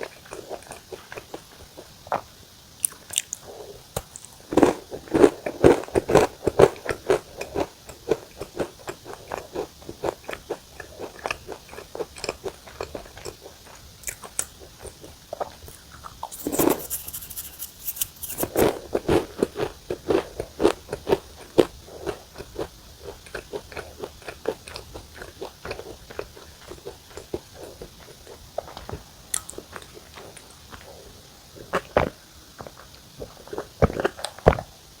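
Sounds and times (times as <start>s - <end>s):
person chewing crunchy biscuits: 16.3s - 27.7s.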